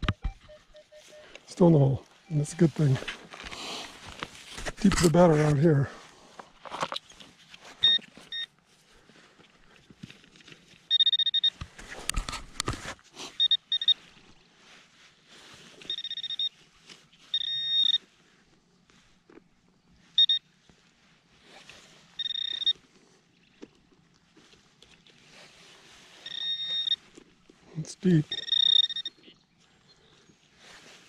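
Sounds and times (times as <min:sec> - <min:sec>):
metal detector beeping: 0:00.0 - 0:03.2, 0:07.8 - 0:08.5, 0:10.9 - 0:11.6, 0:13.3 - 0:14.0, 0:15.8 - 0:16.6, 0:17.2 - 0:18.1, 0:20.2 - 0:20.5, 0:22.2 - 0:22.8, 0:26.2 - 0:27.1, 0:27.8 - 0:30.0
soil scraping and digging: 0:00.2 - 0:08.3.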